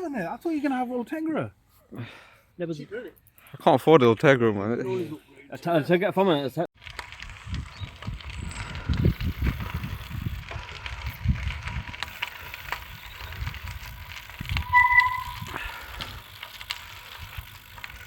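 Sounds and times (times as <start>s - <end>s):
bike clicks and rattles: 6.8s - 18.0s
wind rumbling on microphone: 6.8s - 18.0s
short electronic beep: 14.6s - 15.5s.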